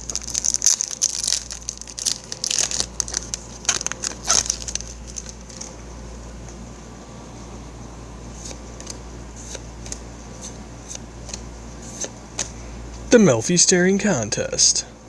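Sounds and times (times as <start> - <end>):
foil wrapper crinkling: 0.0 - 5.8.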